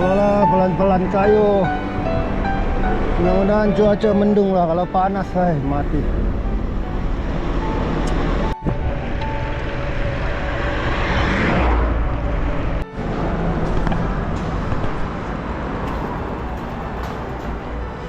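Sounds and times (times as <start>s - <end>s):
road traffic: 0.0s - 18.0s
vehicle passing: 5.8s - 18.0s.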